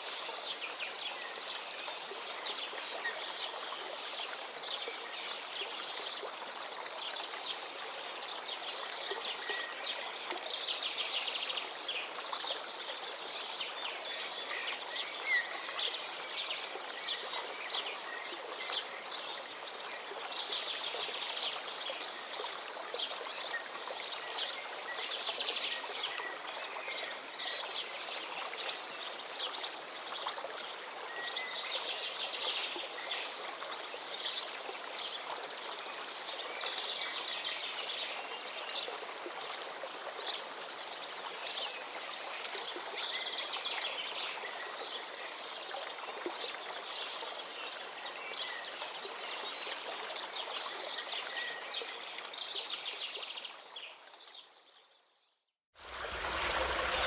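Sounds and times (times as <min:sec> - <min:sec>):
river water flowing: 0:00.0 - 0:54.3, 0:55.8 - 0:57.0.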